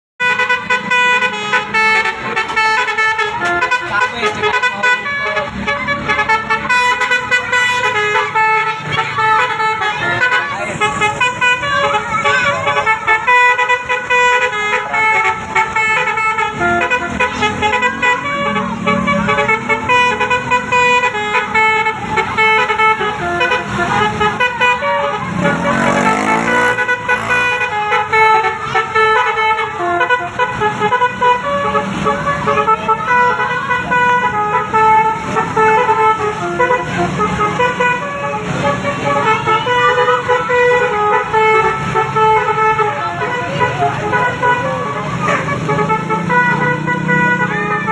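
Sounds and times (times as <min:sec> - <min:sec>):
multi-tone bus horn melody: 0:00.2 - 0:47.9.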